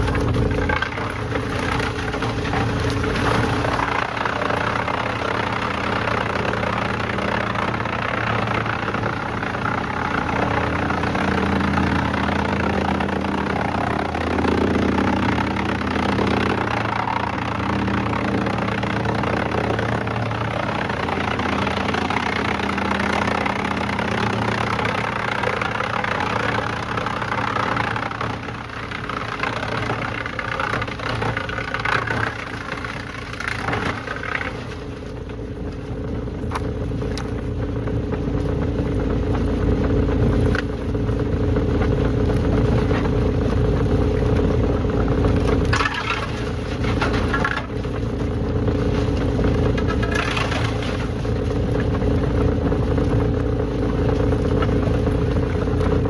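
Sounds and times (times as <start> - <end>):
dense mechanical noise: 0.0 - 56.0
large engine running: 0.0 - 56.0.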